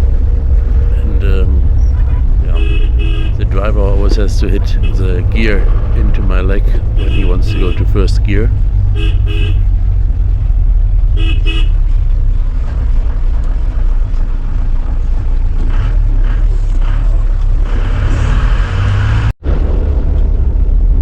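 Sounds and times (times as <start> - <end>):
engine and road rumble: 0.0 - 21.0
car horn toots: 1.0 - 9.8, 11.2 - 11.8.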